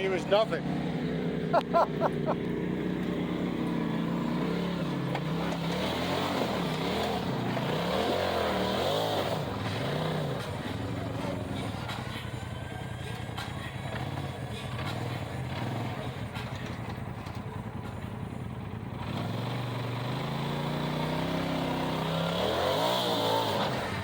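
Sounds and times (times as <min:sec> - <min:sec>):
utility vehicle engine revving: 0:00.0 - 0:24.0.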